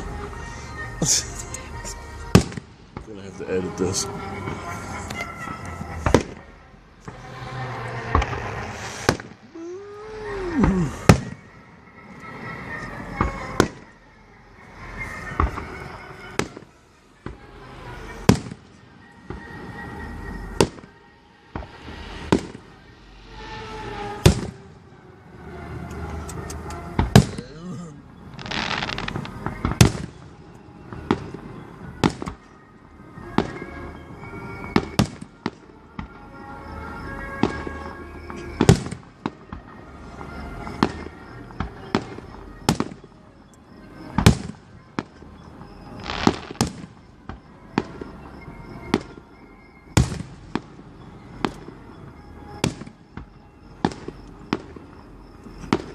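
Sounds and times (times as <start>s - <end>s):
fireworks booming: 7.0s - 11.5s, 23.3s - 24.7s, 27.0s - 27.5s, 28.1s - 32.4s, 38.3s - 39.7s, 45.7s - 49.2s, 50.0s - 51.8s, 52.5s - 55.9s.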